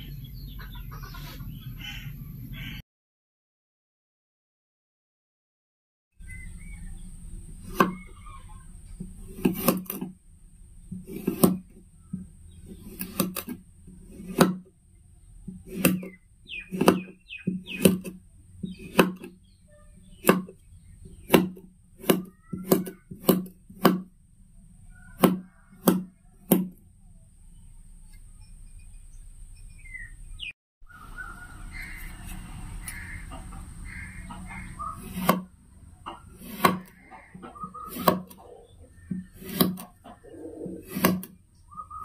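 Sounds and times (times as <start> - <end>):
faint bird chirps: 6.2 - 8.9, 14.9 - 18.1, 18.7 - 21.4, 22.0 - 23.1, 24.9 - 35.3, 36.1 - 42.0.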